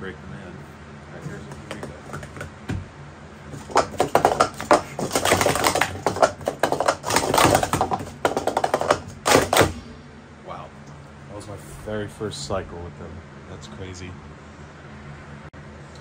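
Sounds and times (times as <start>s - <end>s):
stacking cups clacking: 1.5s - 2.8s, 3.5s - 9.8s.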